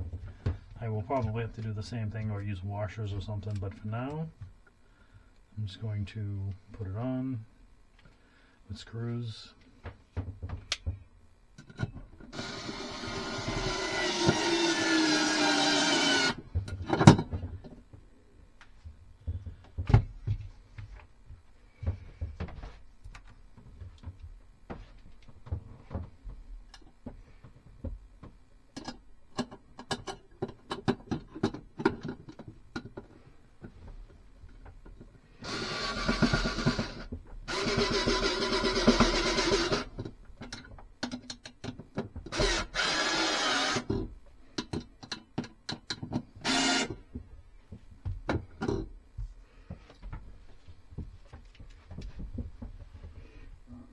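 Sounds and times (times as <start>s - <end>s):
power drill driving screws: 12.3s - 16.4s, 35.4s - 40.0s, 42.3s - 44.0s, 46.4s - 47.0s.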